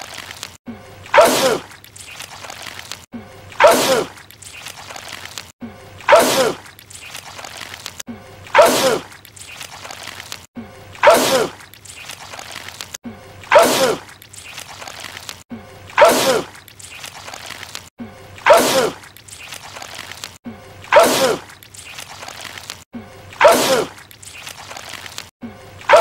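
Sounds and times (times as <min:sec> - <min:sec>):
man sneezing wetly: 0:01.1 - 0:01.7, 0:03.6 - 0:04.1, 0:06.1 - 0:06.6, 0:08.6 - 0:09.1, 0:11.0 - 0:11.6, 0:13.5 - 0:14.0, 0:16.0 - 0:16.5, 0:18.5 - 0:19.0, 0:20.9 - 0:21.5, 0:23.4 - 0:24.0.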